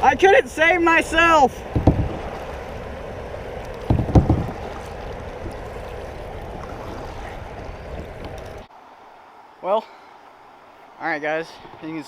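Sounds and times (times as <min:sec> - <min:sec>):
heavy bumps on kayak: 0:00.0 - 0:08.7
creek water rushing: 0:00.0 - 0:12.0.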